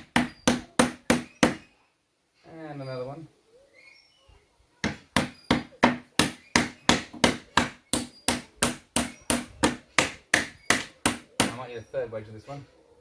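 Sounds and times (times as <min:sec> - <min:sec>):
hammer striking wooden wedge: 0:00.0 - 0:01.7, 0:04.8 - 0:11.6.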